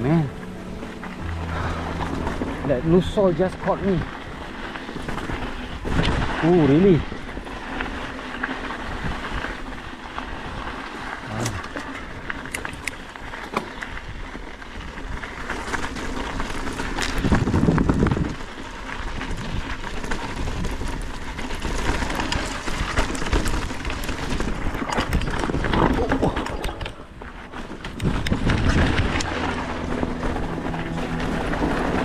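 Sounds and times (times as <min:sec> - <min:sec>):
low rumble: 0:00.0 - 0:06.4, 0:28.5 - 0:32.0
bike tyres crunching on grit: 0:00.0 - 0:32.0
stones and bike rattling: 0:02.7 - 0:29.6.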